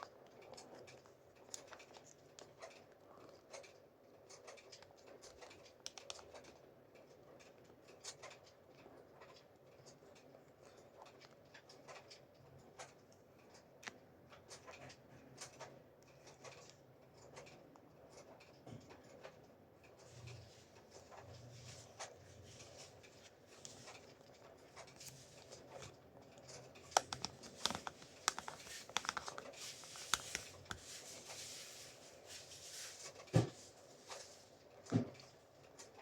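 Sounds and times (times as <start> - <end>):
light scraping of packaging: 24.8 - 34.5.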